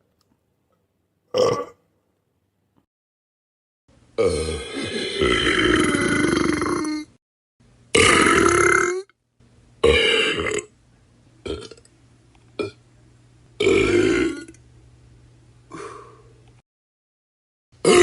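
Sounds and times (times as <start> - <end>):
person burping: 1.3 - 1.8, 4.2 - 7.2, 7.9 - 9.2, 9.8 - 10.7, 11.5 - 11.8, 13.6 - 14.6, 17.8 - 18.0.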